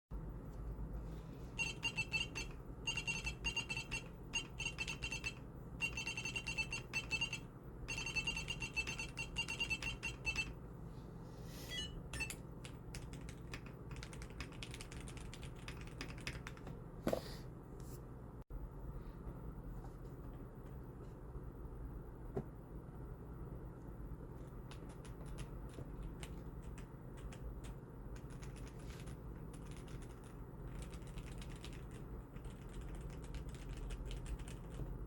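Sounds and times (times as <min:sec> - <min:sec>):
mechanical keyboard typing: 0:01.6 - 0:10.5, 0:12.1 - 0:16.7, 0:24.6 - 0:35.0.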